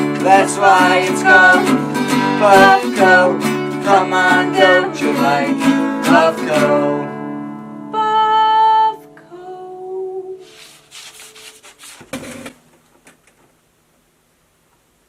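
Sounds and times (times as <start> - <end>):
acoustic guitar chord ringing: 0.0 - 8.2
person humming: 8.1 - 10.6
scratchy guitar strokes: 10.4 - 12.4.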